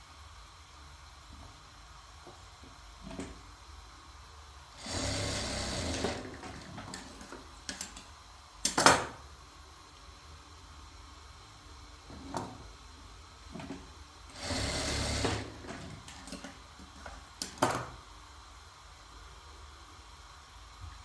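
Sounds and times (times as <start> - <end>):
sewing machine running: 4.8 - 8.0, 13.6 - 17.9.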